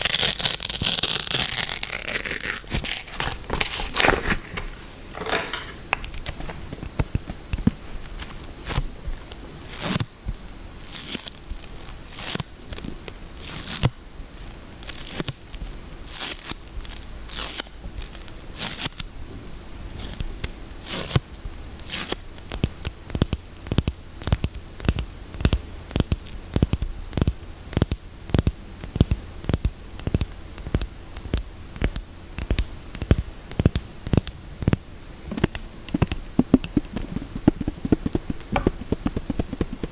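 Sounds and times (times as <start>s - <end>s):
packaging tearing and rustling: 0.0s - 7.1s, 7.8s - 9.0s.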